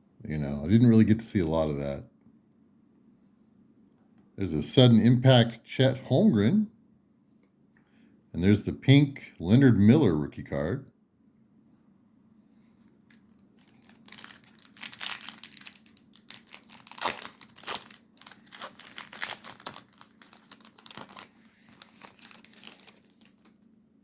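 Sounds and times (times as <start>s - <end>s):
foil wrapper crinkling and tearing: 13.0s - 23.6s.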